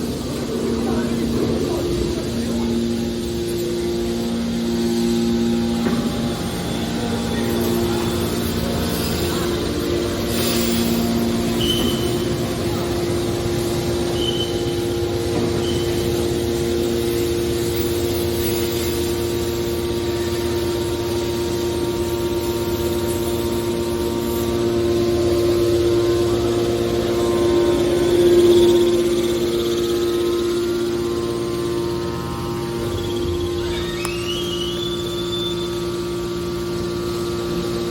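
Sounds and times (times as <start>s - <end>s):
hydraulic baler motor humming: 0.0s - 37.9s
short high squeaks: 11.6s - 12.2s, 32.9s - 35.9s.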